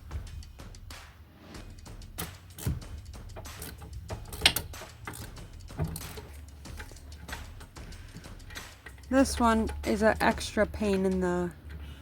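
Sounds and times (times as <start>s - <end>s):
hand tools knocking and clinking: 2.1s - 12.0s.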